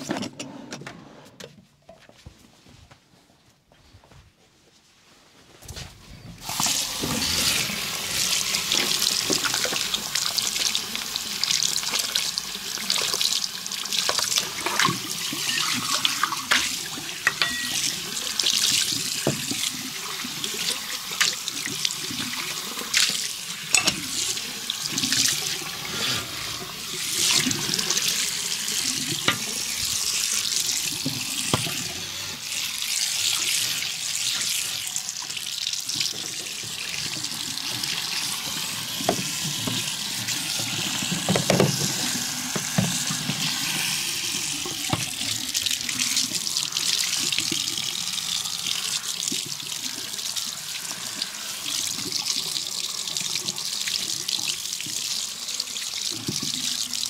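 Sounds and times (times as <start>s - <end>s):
tap water splashing into basin: 6.5s - 10.8s, 14.0s - 15.1s, 44.5s - 46.4s.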